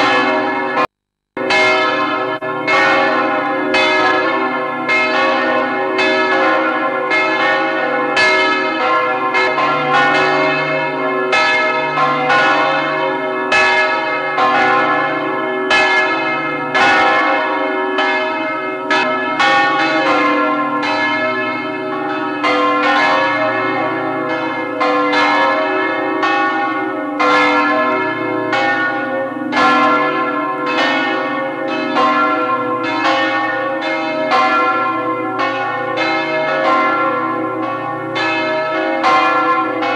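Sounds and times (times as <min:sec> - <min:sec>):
church bells pealing: 0:00.0 - 0:39.9.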